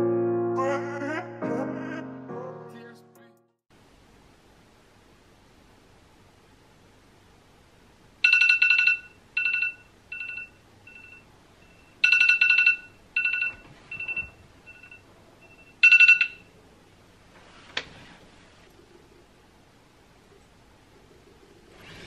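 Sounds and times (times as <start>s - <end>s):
phone ringtone: 8.2s - 16.5s.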